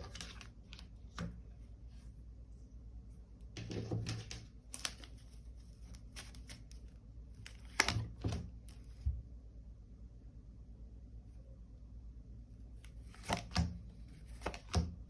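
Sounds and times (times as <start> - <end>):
cards being shuffled: 0.0 - 1.3, 3.6 - 9.0, 12.8 - 14.9.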